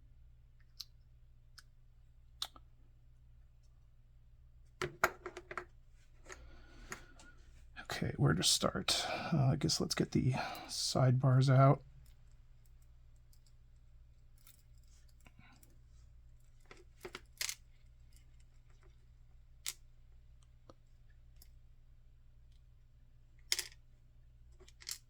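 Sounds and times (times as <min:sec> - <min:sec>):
faint steady hum: 0:00.0 - 0:25.0
small metal clicks: 0:24.6 - 0:25.0.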